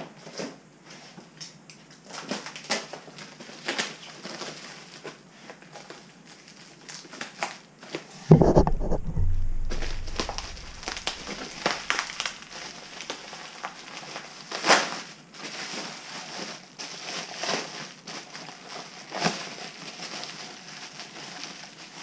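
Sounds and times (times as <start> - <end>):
packing material crinkling: 8.8 - 22.0.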